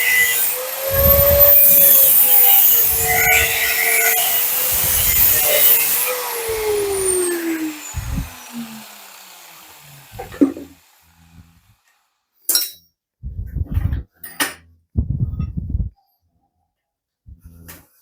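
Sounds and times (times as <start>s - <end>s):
power tool winding down: 0.0s - 12.0s.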